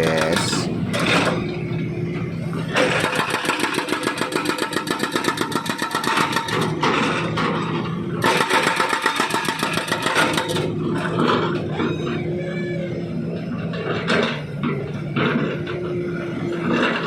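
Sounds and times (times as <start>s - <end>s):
hydraulic breaker hammering asphalt: 8.3s - 10.4s.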